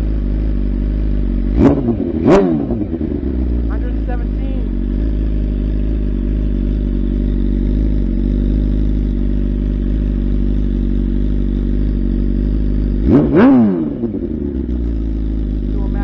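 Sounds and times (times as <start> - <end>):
motorcycle engine idling: 0.0 - 16.0
motorcycle throttle blip: 4.8 - 15.7.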